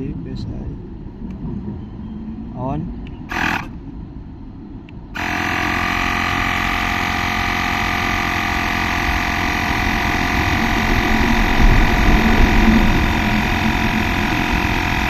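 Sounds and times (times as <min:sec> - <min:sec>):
electric air compressor buzzing: 0:03.3 - 0:03.8, 0:05.1 - 0:15.0.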